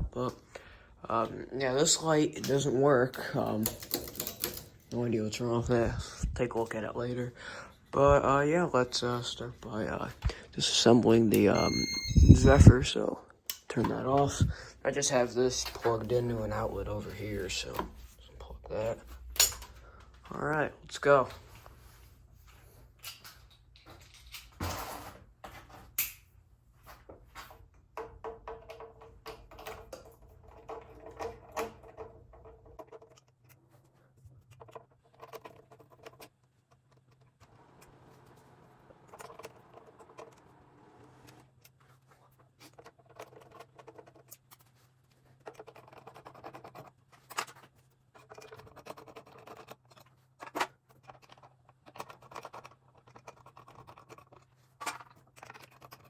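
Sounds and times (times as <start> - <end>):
clicks knocks and scrapes of parts: 2.4 - 5.0, 15.2 - 20.3, 22.5 - 37.9, 41.3 - 56.0.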